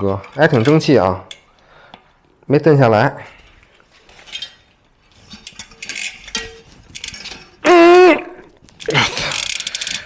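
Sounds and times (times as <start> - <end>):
light metallic clicks and scrapes: 0.0 - 2.1, 3.4 - 7.6
loud vocal exclamation: 7.6 - 9.0.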